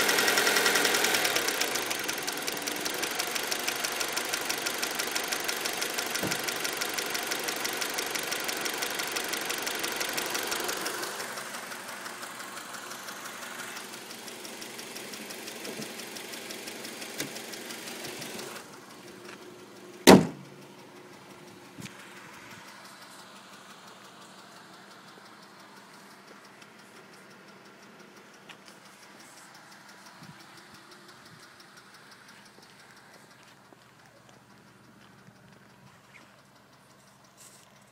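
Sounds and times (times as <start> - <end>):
car engine idling: 0.0 - 37.9
fast steady engine ticking: 0.0 - 37.9
loud thump: 20.1 - 20.5.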